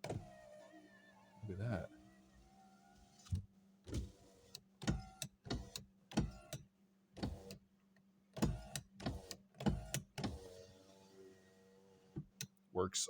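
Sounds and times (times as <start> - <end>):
window motor running: 0.0 - 6.5.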